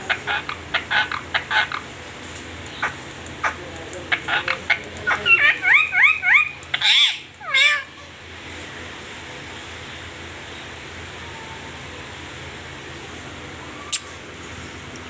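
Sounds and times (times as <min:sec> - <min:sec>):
parrot calls: 0:00.0 - 0:02.0, 0:02.8 - 0:08.2.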